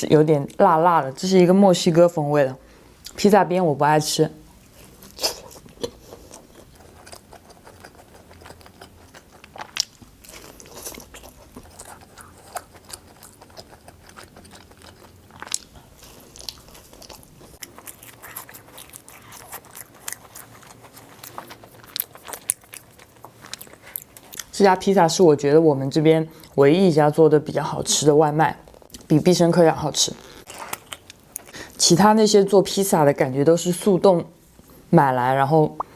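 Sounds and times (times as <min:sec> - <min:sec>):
person chewing pizza: 0:04.6 - 0:24.6, 0:30.2 - 0:31.8.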